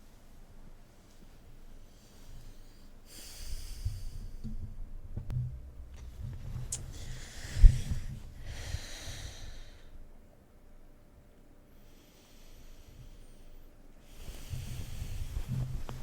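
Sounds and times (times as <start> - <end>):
slow close breathing: 1.8 - 4.6, 6.7 - 10.1, 11.7 - 16.0
low rumbling: 4.2 - 9.6.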